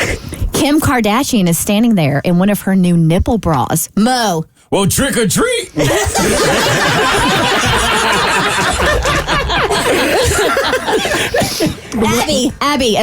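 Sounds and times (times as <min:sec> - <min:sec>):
group of people laughing: 0:05.8 - 0:11.9.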